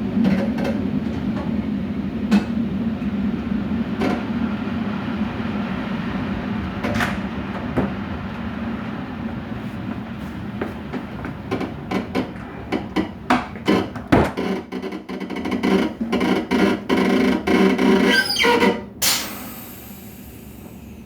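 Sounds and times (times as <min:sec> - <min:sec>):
air hiss: 0:19.0 - 0:21.0.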